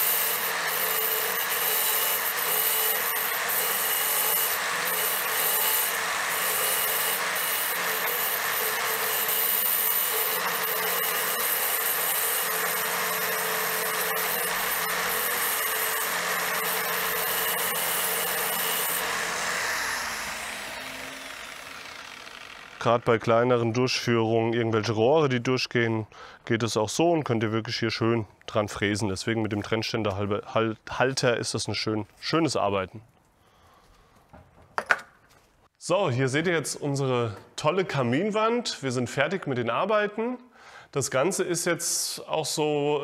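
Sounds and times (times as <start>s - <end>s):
angle grinder cutting brick: 0.0s - 23.3s.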